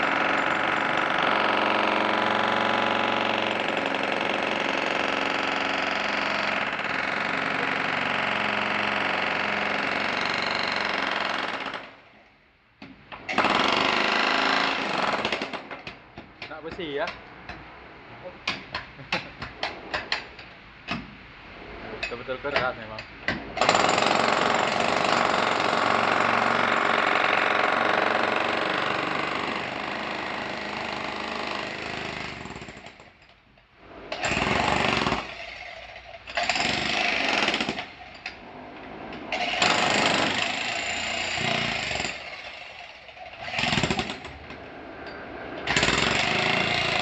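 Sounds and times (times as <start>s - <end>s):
concrete breaker hammering: 23.3s - 32.9s, 36.3s - 37.9s, 39.4s - 42.3s, 43.4s - 44.3s, 45.6s - 47.0s.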